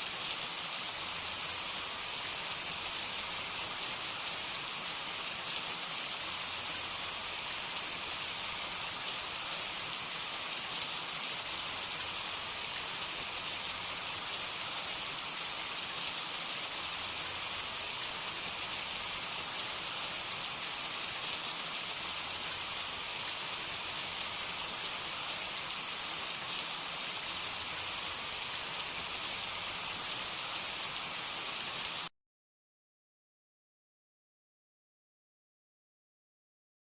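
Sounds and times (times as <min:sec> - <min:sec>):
hot oil sizzling and crackling: 0:00.0 - 0:32.1.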